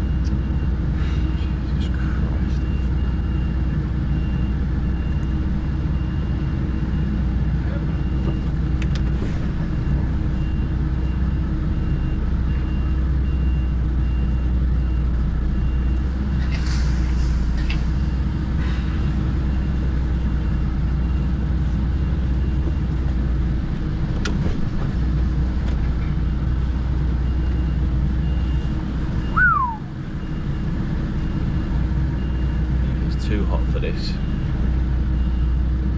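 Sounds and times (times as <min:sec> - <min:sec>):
diesel truck engine idling: 0:00.0 - 0:35.9
reversing beeper: 0:27.2 - 0:32.7
loud falling squeal: 0:29.2 - 0:30.0.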